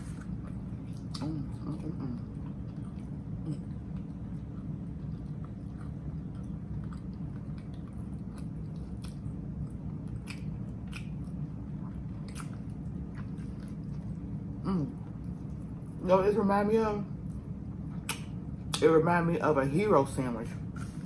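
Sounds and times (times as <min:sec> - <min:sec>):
person chewing a sandwich: 0:00.0 - 0:16.0.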